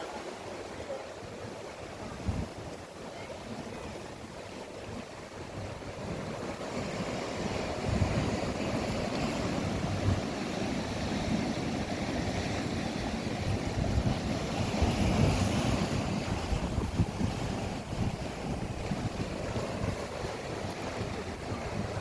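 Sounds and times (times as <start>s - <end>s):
ocean waves washing: 0.0s - 22.0s
wind buffeting microphone: 5.3s - 22.0s.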